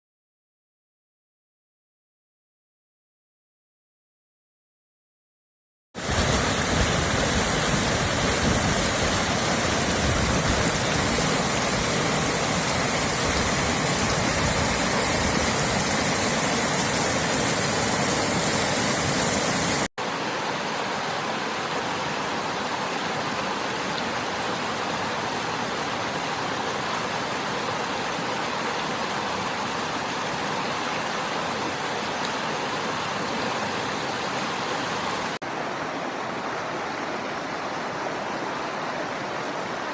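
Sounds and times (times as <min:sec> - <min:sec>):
river water rushing: 0:06.0 - 0:39.9.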